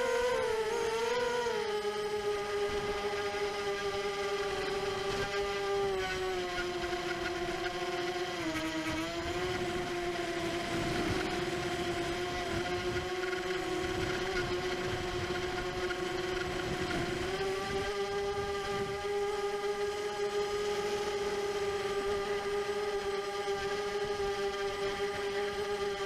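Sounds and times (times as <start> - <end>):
drone motors whining: 0.0 - 26.0.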